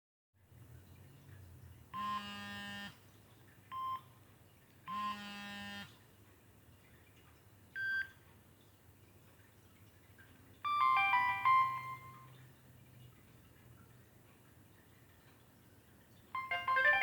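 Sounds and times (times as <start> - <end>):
short phone beeps: 4.9 - 5.2, 7.8 - 8.1, 10.6 - 12.3, 16.4 - 17.0
buzzy phone tones: 4.9 - 5.9, 10.7 - 12.3, 16.4 - 17.0.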